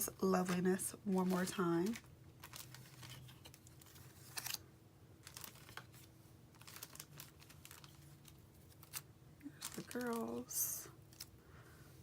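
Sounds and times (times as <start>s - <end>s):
paper sheets rustling: 0.3s - 4.6s, 5.2s - 9.0s, 9.6s - 10.4s.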